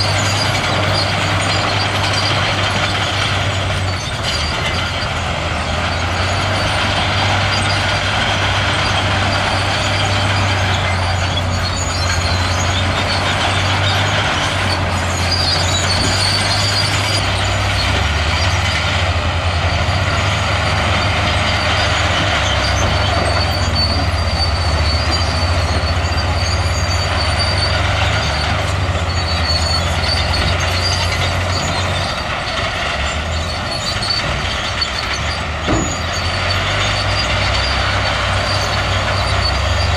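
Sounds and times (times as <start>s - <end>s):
heavy diesel engine drone: 0.0s - 39.9s
thin high squeal: 21.4s - 39.9s.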